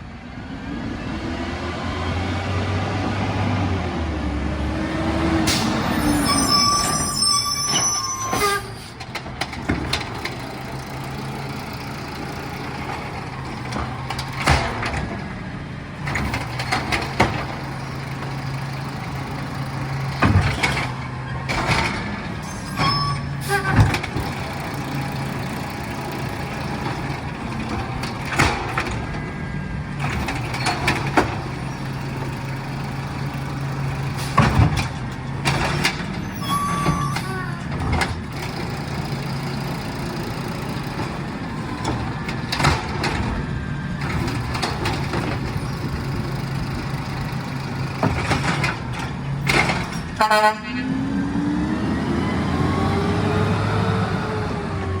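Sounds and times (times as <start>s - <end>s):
high steady squealing tone: 5.8s - 8.9s, 22.4s - 23.8s, 36.3s - 37.6s
truck engine idling: 7.3s - 50.8s
knocks and clanks from pickup: 8.3s - 15.4s, 16.0s - 50.3s.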